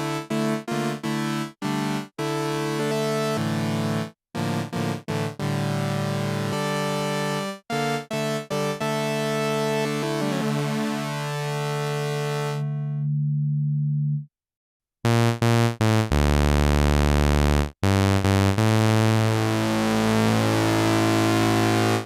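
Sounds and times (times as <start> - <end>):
synthesizer held chord: 9.7 - 13.2
synthesizer stabbing notes: 15.1 - 22.0.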